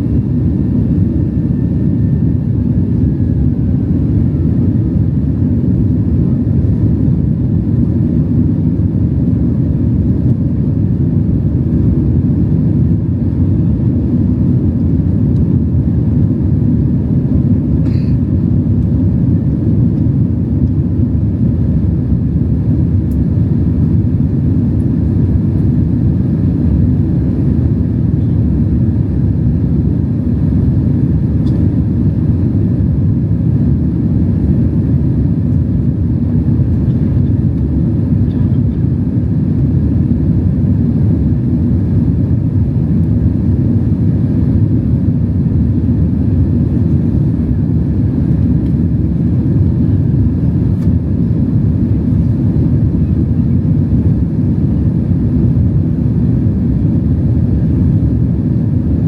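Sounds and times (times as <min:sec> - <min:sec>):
airliner cabin engine rumble: 0:00.0 - 0:59.0.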